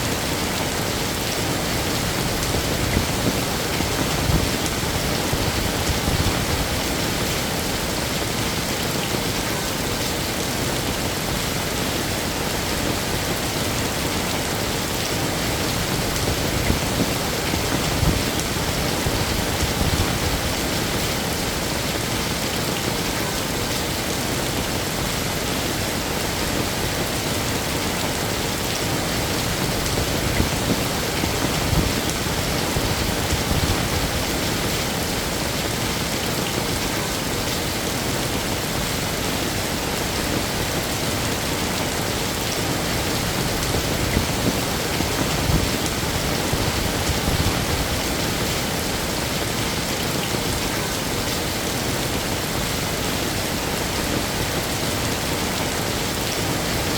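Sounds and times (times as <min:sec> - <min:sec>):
heavy rain falling: 0:00.0 - 0:56.9.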